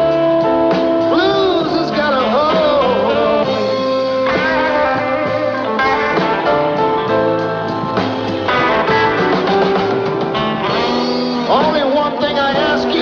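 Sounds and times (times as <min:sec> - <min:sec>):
blues lead guitar over band: 0:00.0 - 0:13.0
person singing: 0:00.9 - 0:07.1, 0:10.5 - 0:13.0.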